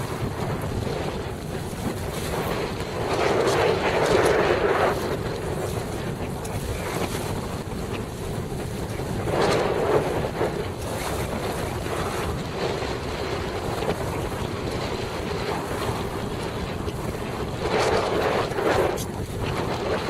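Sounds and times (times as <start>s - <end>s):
water splashing along hull: 0.0s - 20.0s
wind buffeting microphone: 0.0s - 20.0s.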